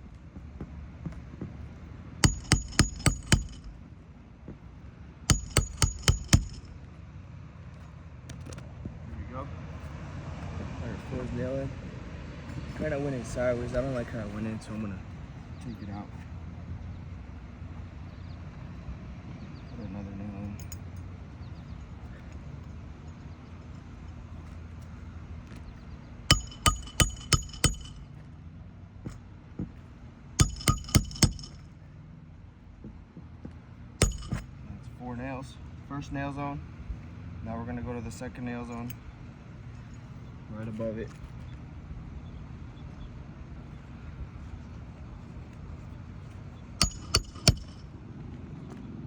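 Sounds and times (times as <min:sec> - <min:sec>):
hammer striking metal tool: 0:02.2 - 0:03.8, 0:05.3 - 0:06.8, 0:26.3 - 0:28.0, 0:30.4 - 0:31.6, 0:34.0 - 0:34.6, 0:46.8 - 0:47.8.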